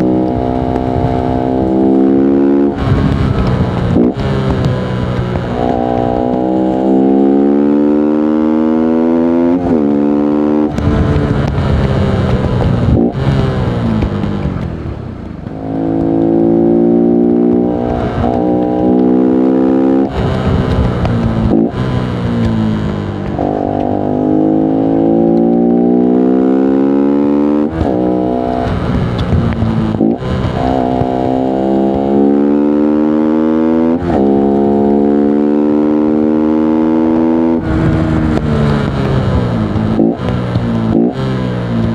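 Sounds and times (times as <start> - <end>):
motorcycle engine accelerating: 0.0 - 41.9
wind noise: 0.0 - 41.9.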